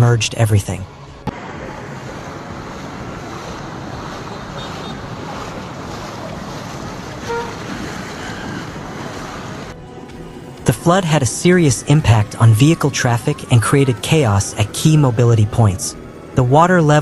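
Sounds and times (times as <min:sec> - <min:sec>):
water rushing: 0:00.9 - 0:17.0
wind noise on microphone: 0:01.2 - 0:09.8.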